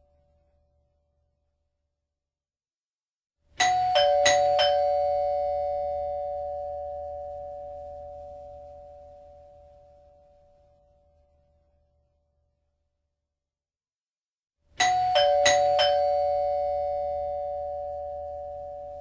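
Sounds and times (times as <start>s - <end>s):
two-tone doorbell chime: 3.6s - 9.2s, 14.8s - 19.0s.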